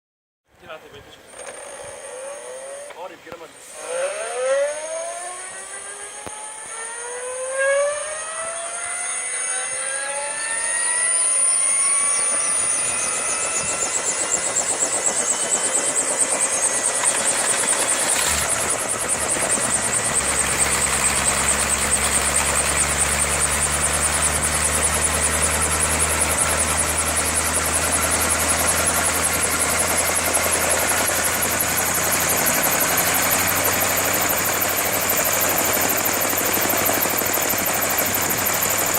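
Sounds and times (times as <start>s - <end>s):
helicopter turbine whine: 0.6s - 38.9s
low pulsing rumble: 11.9s - 38.9s.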